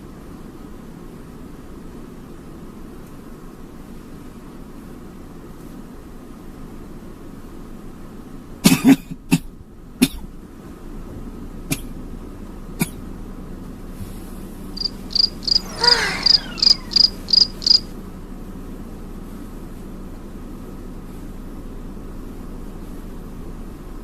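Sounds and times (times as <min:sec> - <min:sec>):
person coughing hard: 0:08.7 - 0:10.3
high chirps with falling glide: 0:14.8 - 0:18.0.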